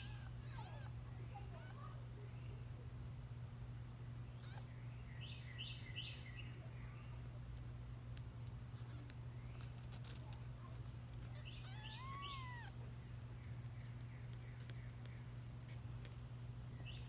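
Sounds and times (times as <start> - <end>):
steady low hum: 0.0 - 17.0
faint high squeaks: 11.2 - 12.7
kitten mewing: 11.3 - 12.8.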